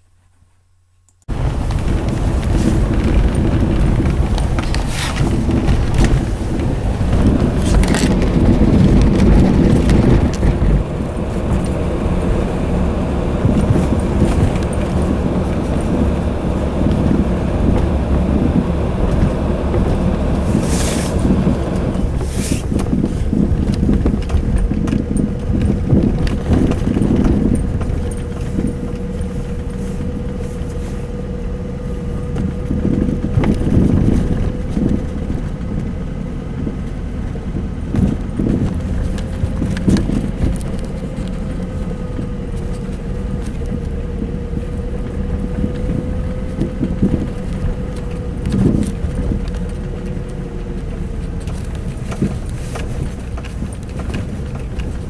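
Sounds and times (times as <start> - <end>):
car road and cabin rumble: 0.1 - 55.0
suspension knocks: 1.3 - 55.0.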